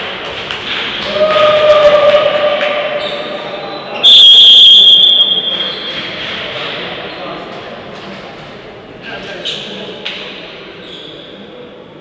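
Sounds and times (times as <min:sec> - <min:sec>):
people shouting: 0:01.0 - 0:03.5
referee's whistle blast: 0:04.0 - 0:05.8.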